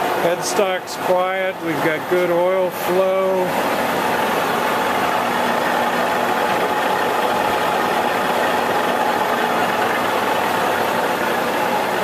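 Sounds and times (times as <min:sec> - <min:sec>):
lathe motor humming: 0:00.0 - 0:12.0.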